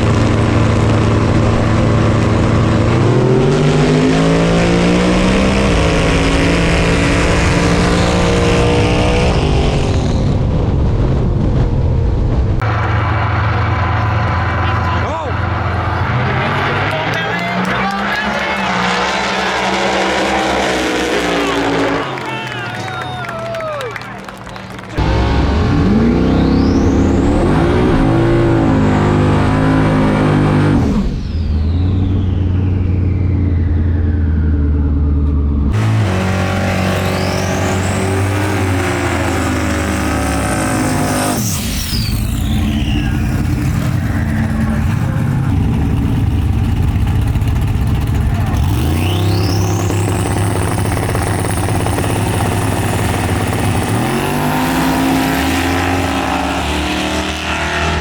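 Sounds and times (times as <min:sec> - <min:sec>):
race cars passing: 0:12.6 - 0:58.0
whistling glides: 0:17.2 - 0:25.0, 0:26.0 - 0:27.4, 0:31.0 - 0:34.7, 0:36.7 - 0:39.5, 0:41.3 - 0:44.5, 0:48.0 - 0:56.5.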